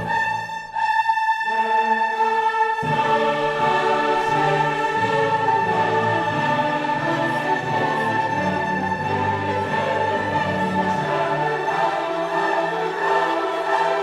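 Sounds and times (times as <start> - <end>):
orchestral music with choir: 0.0 - 14.0.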